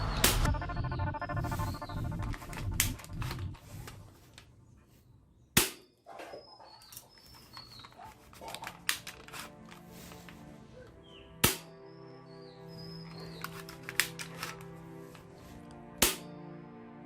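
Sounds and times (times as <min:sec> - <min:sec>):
toy gun plastic clicks: 0:06.9 - 0:09.8, 0:13.3 - 0:14.8
toy gun shot: 0:11.4 - 0:11.7.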